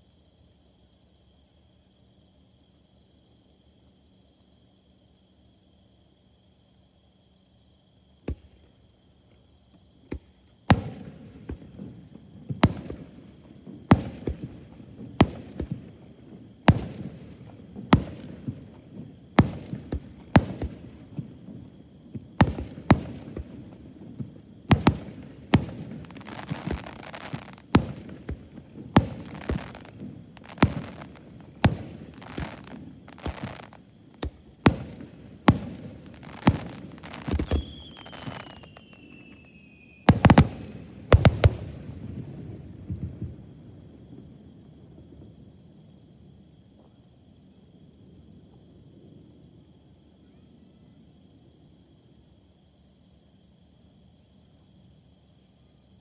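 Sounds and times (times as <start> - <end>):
insects chirring: 0.0 - 56.0
fireworks bursting with bangs: 8.3 - 8.7, 10.1 - 44.1
fireworks crackling: 10.1 - 43.6.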